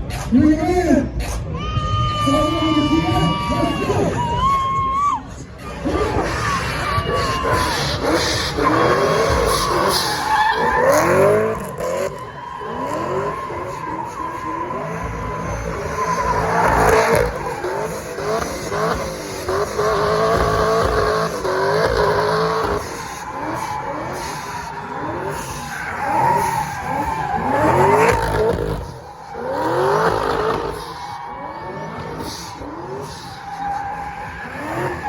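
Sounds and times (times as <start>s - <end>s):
tires squealing: 0.0s - 35.0s
engine revving: 5.6s - 35.0s.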